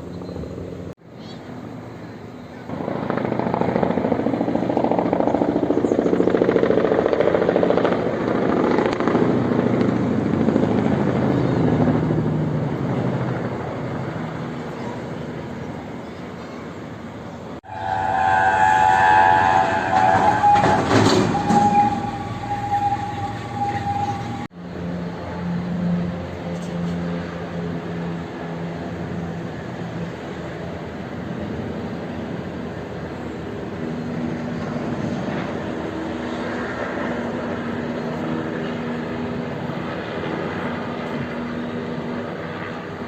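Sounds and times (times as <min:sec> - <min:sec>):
helicopter drone: 0:00.0 - 0:43.0
high-pitched tones: 0:17.6 - 0:24.5.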